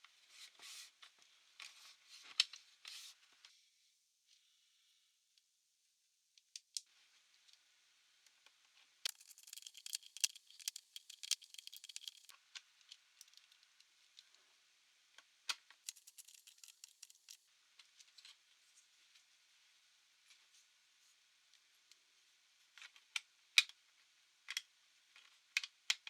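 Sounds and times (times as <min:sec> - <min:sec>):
small hard parts clicking: 0:09.1 - 0:12.3, 0:15.8 - 0:17.4.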